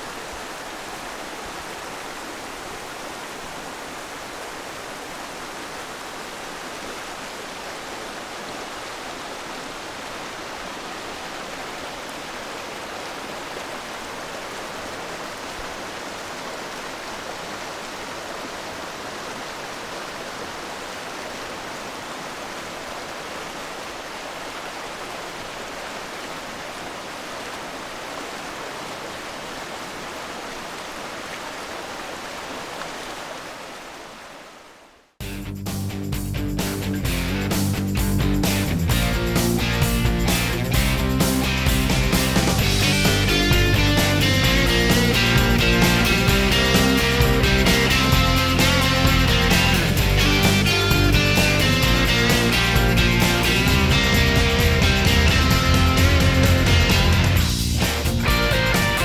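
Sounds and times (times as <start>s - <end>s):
road noise: 38.5s - 59.0s.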